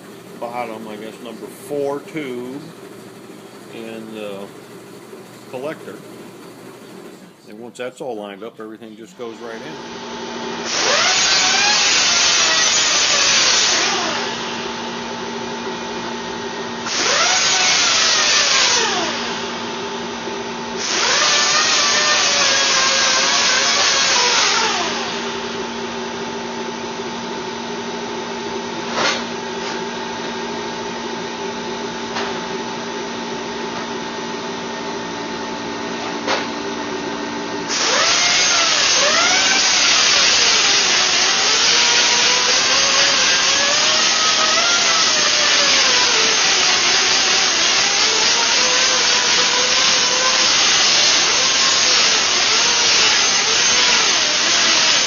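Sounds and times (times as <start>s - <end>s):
handheld power tool running: 9.5s - 14.8s, 16.8s - 19.9s, 20.7s - 25.7s, 37.7s - 55.0s.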